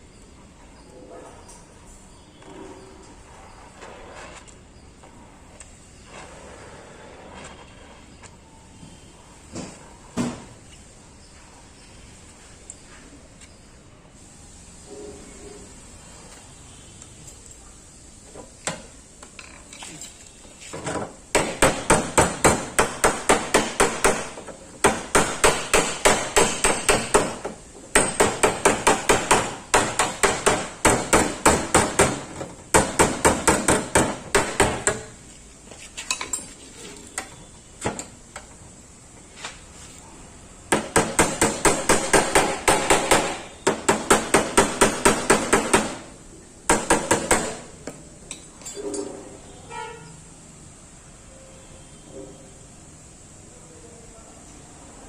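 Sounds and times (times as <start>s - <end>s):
hammer beating sheet metal: 21.3s - 35.2s, 40.7s - 47.7s.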